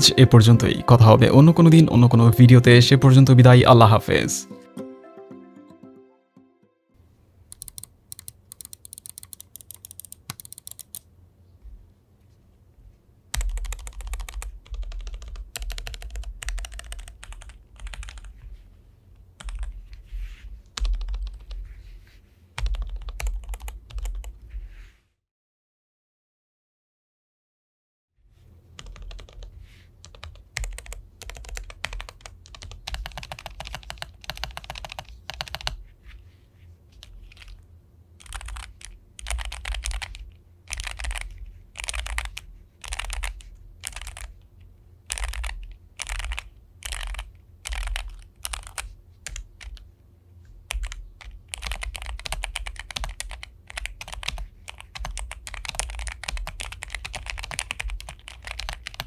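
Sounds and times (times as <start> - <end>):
mechanical keyboard typing: 7.5 - 11.1, 13.3 - 18.4, 19.4 - 19.7, 20.8 - 21.6, 22.6 - 24.4, 28.8 - 35.8, 37.0 - 37.6, 38.2 - 44.4, 45.1 - 49.8, 50.7 - 59.0.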